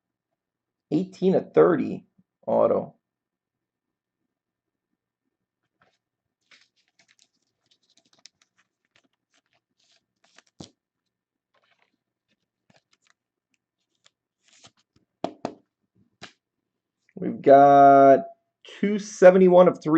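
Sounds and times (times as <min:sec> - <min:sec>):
trading cards being handled: 0:05.7 - 0:16.5.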